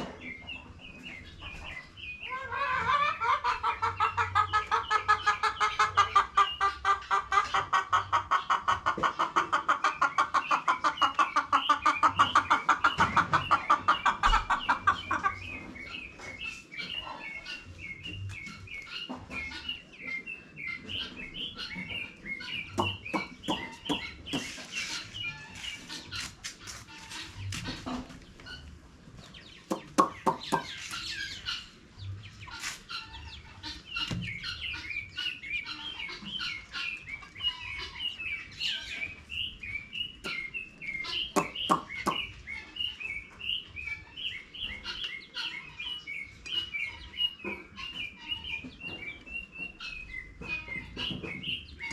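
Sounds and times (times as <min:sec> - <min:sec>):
chickens clucking: 0:00.0 - 0:51.9
high chirping: 0:09.9 - 0:51.9.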